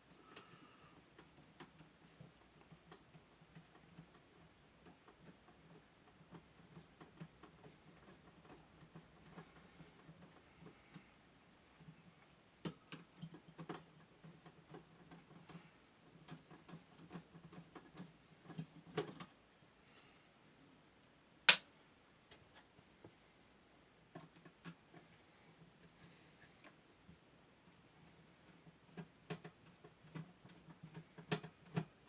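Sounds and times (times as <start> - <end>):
small clicks and taps of tools: 11.8 - 19.3, 28.5 - 32.0.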